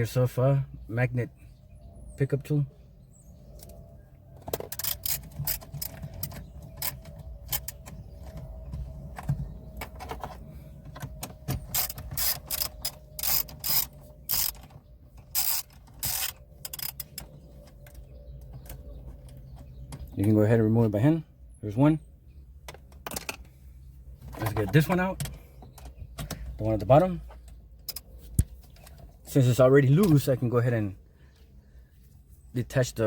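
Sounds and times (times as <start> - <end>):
ratchet clicking: 4.6 - 7.8, 11.7 - 17.3.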